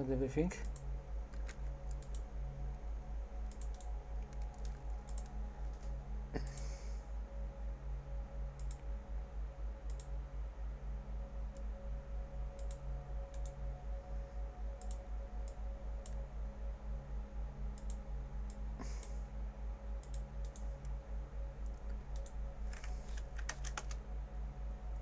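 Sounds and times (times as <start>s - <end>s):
pulsing low electrical hum: 0.0s - 25.0s
mouse and keyboard clicks: 0.6s - 2.2s, 21.7s - 24.0s.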